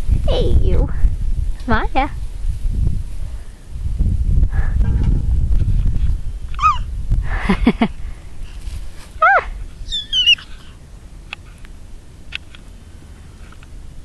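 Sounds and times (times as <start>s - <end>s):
puppies whining and yelping: 6.6s - 6.9s, 9.2s - 10.6s.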